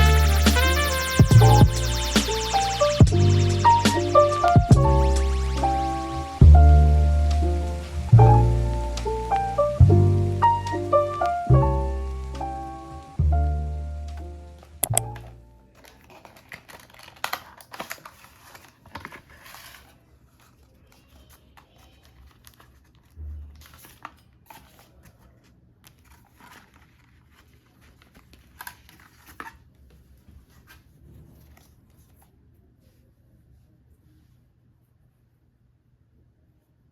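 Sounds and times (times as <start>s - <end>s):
crinkling and rustling: 14.1s - 33.1s
taps and clicks: 14.8s - 15.2s.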